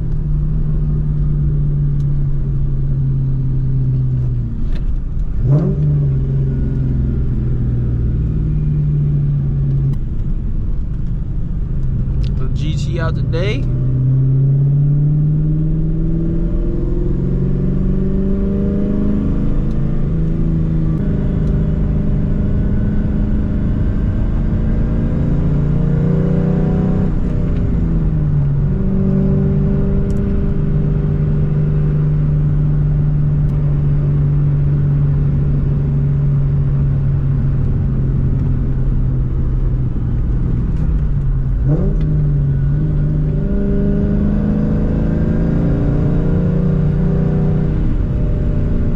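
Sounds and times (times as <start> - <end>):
car engine accelerating: 0.0 - 48.9.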